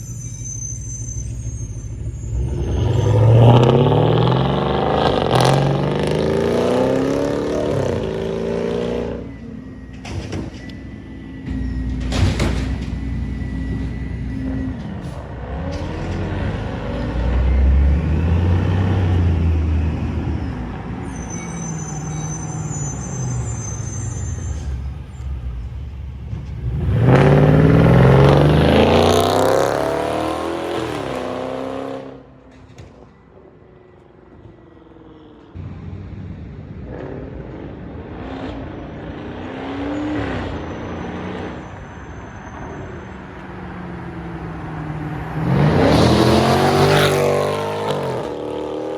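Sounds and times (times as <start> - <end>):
car engine revving and accelerating: 2.3 - 9.3, 15.4 - 20.1, 26.6 - 32.3, 36.9 - 41.6, 44.8 - 48.9.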